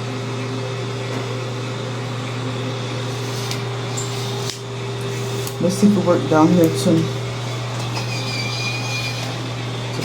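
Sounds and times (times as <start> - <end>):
small electric motor humming: 2.2 - 10.0.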